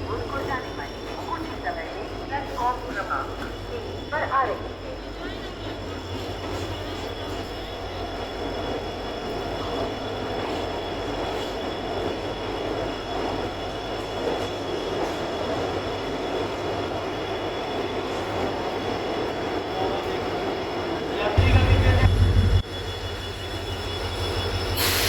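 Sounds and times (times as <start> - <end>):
train wheels rumbling on rail: 0.0 - 25.0
high-pitched whine: 21.4 - 25.0.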